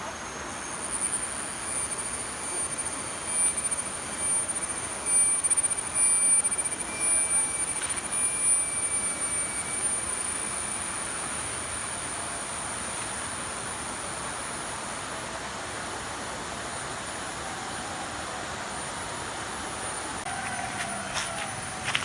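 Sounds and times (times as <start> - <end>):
lower insect tone: 0.0 - 22.0
steady hiss: 0.0 - 22.0
insects shrilling: 0.1 - 14.6.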